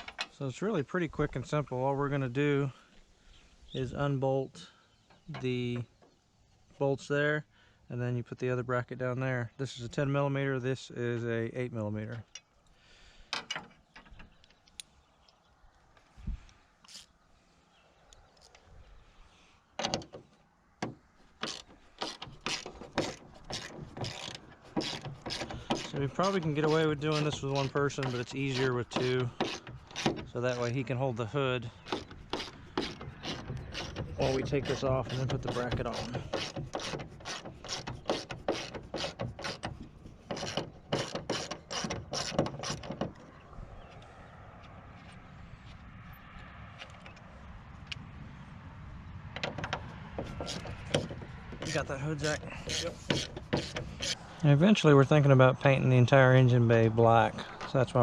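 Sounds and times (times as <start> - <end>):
socket ratchet rasping: 20.8 - 30.7, 31.7 - 43.2, 49.4 - 54.2.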